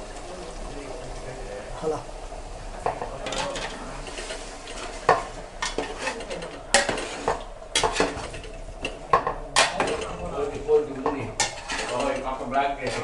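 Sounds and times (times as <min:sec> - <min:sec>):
low sizzle: 0:00.0 - 0:13.0
spoon stirring in pot: 0:02.8 - 0:13.0
spoon knocking against pot: 0:06.8 - 0:10.0.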